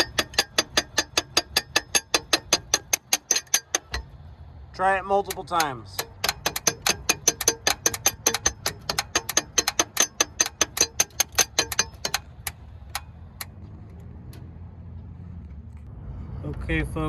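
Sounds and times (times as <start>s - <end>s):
starter solenoid clicking: 0.0s - 4.2s, 5.1s - 13.7s.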